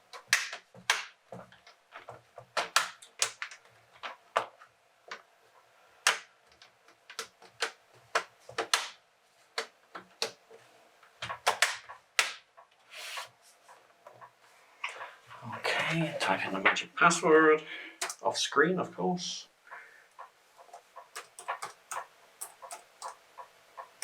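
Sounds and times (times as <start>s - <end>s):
plastic clips clicking: 18.0s - 18.2s.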